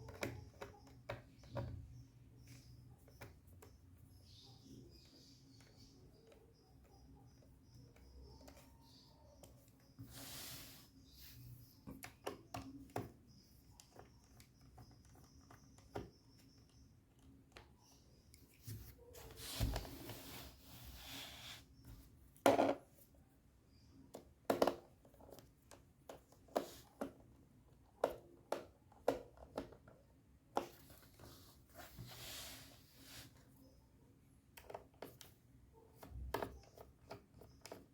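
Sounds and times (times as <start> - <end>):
clicks and taps on plastic: 0.0 - 10.0, 11.8 - 18.6, 24.0 - 31.0, 34.5 - 37.9.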